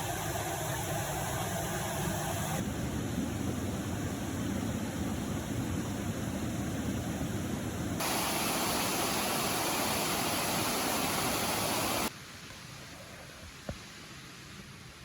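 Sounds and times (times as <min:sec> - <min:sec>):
quiet hiss: 0:02.6 - 0:15.0
waterfall rushing: 0:08.0 - 0:12.1.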